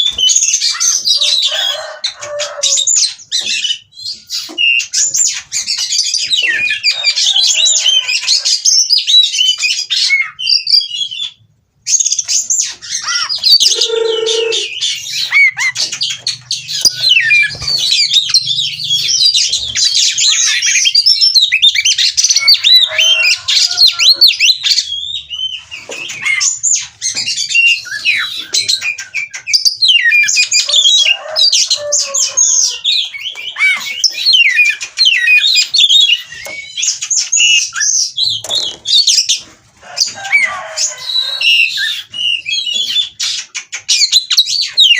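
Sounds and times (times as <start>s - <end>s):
bird singing whistles and chirps: 12.0s - 26.5s, 27.1s - 31.2s.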